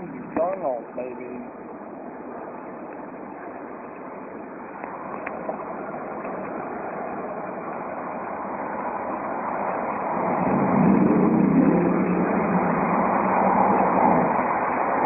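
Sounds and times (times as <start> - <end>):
car engine droning in tunnel: 4.4 - 15.0.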